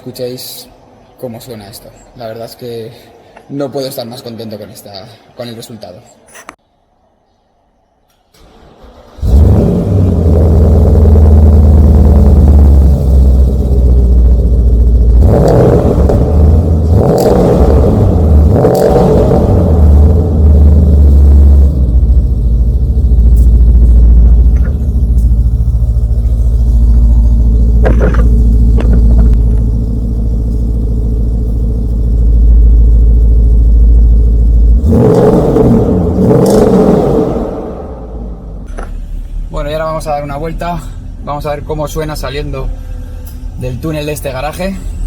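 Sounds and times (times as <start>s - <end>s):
exhaust crack: 8.4s - 42.5s
car engine idling and revving: 8.6s - 45.0s.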